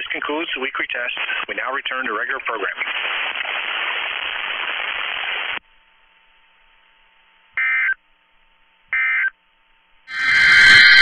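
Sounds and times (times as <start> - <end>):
radio static hiss: 0.0 - 5.6, 10.1 - 11.0
electronic tone beeps: 10.1 - 11.0.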